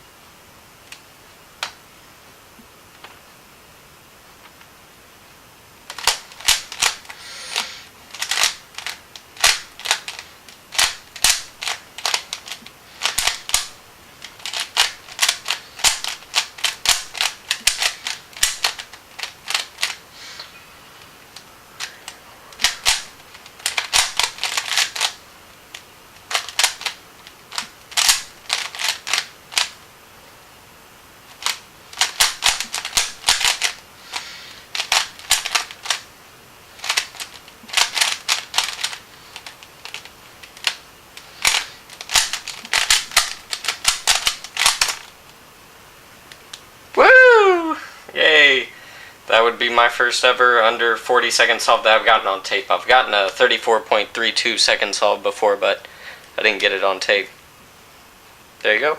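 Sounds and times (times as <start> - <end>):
puzzle cube turning clicks: 5.9 - 20.5, 21.3 - 29.8, 31.3 - 36.0, 36.8 - 40.8, 41.4 - 45.2.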